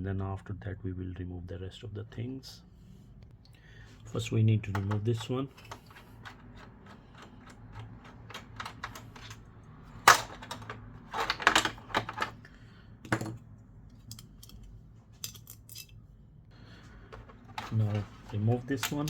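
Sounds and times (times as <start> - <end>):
tools and plastic parts clicking: 4.6 - 12.4, 13.1 - 16.0, 17.1 - 18.0, 18.6 - 19.0.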